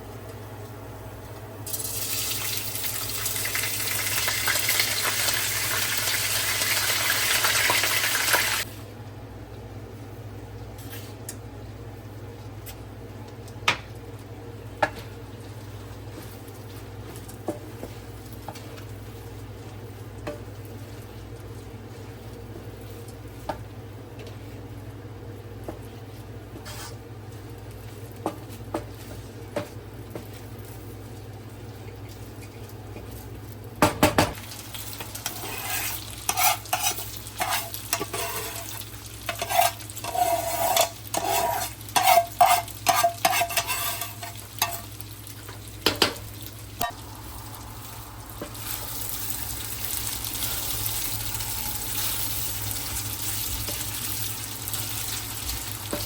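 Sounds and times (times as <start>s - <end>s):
utensil scraping a pot: 35.2s - 44.8s.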